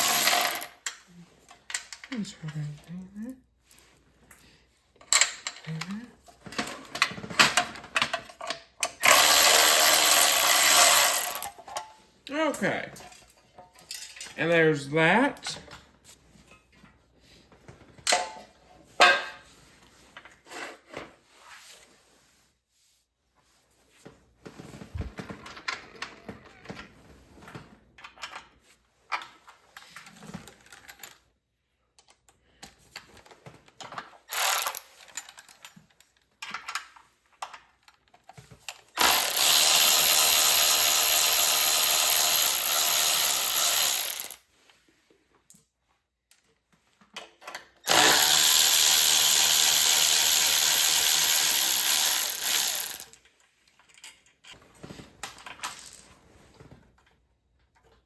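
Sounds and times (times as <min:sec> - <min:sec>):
hand tools clattering on metal parts: 0:00.0 - 0:00.7
power drill running: 0:00.0 - 0:00.8, 0:09.0 - 0:11.5, 0:34.3 - 0:34.8, 0:39.0 - 0:44.4, 0:47.9 - 0:53.1.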